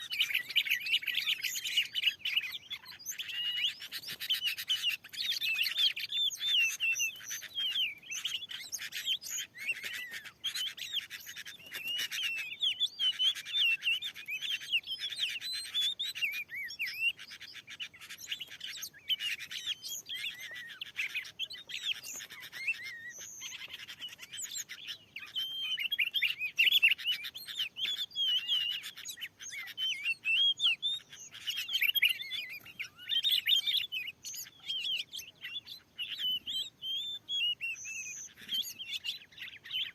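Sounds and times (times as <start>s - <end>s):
bird chirps and whistles: 0.0s - 39.9s.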